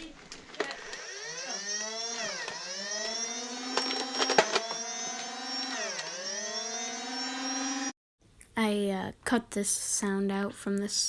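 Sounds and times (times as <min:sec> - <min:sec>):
flywheel motors whirring: 0:00.3 - 0:07.9.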